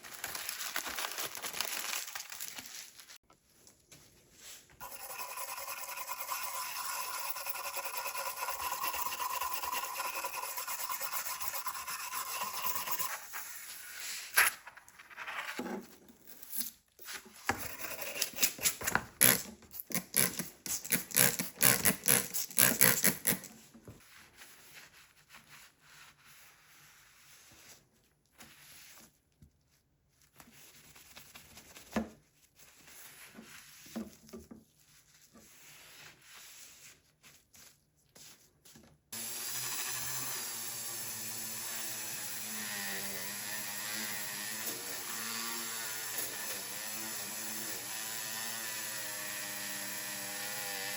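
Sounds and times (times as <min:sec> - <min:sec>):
rotary tool whining: 0:04.8 - 0:13.2.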